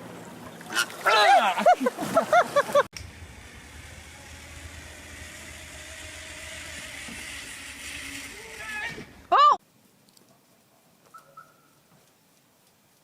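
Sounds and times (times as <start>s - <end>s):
engine hum: 0.0s - 9.6s.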